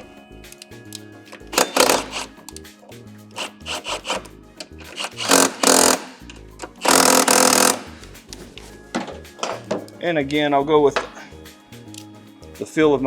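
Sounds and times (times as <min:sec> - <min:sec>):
background music: 0:00.0 - 0:13.0
socket ratchet clicking: 0:00.6 - 0:02.7, 0:03.3 - 0:08.0.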